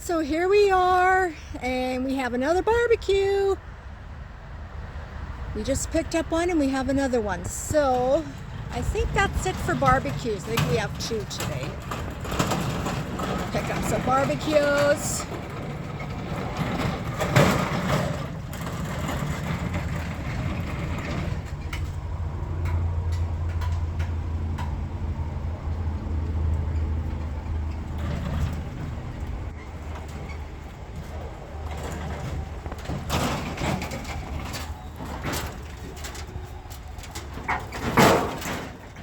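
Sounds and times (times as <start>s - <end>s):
vehicle engine humming: 0.0s - 39.0s
knocks and clanks: 7.4s - 39.0s.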